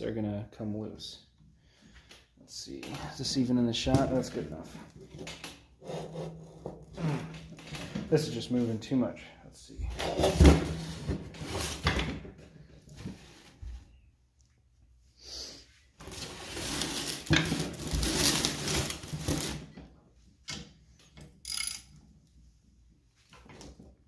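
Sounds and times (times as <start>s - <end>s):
socket wrench clanking on metal: 20.5s - 22.0s.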